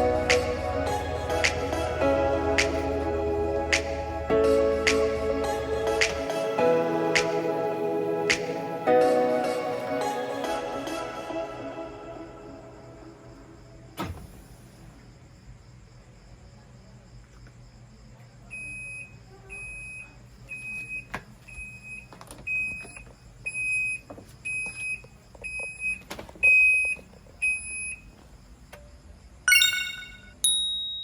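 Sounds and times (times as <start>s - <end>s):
short high electronic beeps: 29.5s - 31.0s.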